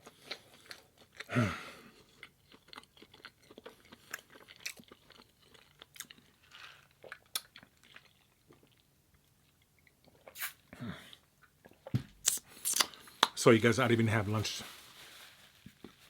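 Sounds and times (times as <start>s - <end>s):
chewing food: 0.0s - 10.5s, 11.1s - 13.4s.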